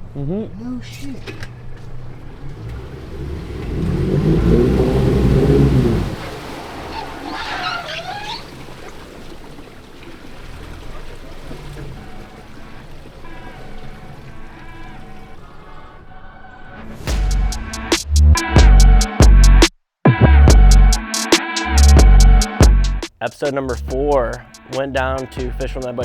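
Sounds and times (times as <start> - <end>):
outboard motor revving: 1.5 - 15.8, 17.1 - 19.7.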